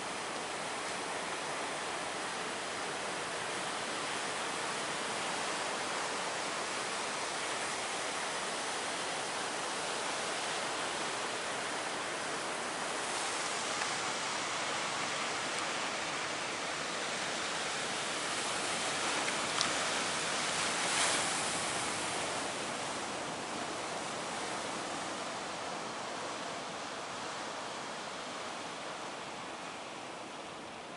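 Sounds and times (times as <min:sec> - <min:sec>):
ocean waves breaking: 0:08.7 - 0:30.9.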